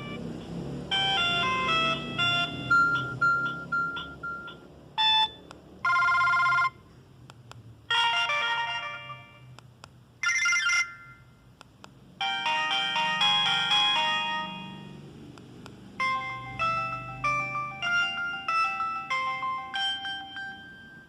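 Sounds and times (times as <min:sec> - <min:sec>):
ringtone melody: 0:00.0 - 0:06.9, 0:07.9 - 0:09.6, 0:10.2 - 0:11.5, 0:12.2 - 0:21.0
electronic alert jingles: 0:10.2 - 0:11.3.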